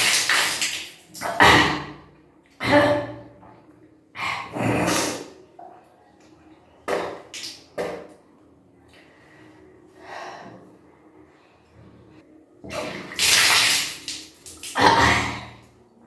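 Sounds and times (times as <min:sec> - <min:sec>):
person retching and gasping: 0:14.6 - 0:15.7.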